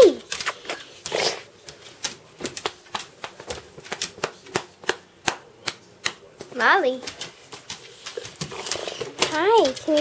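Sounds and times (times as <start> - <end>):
dog claws clicking on hard floor: 0.0 - 10.0.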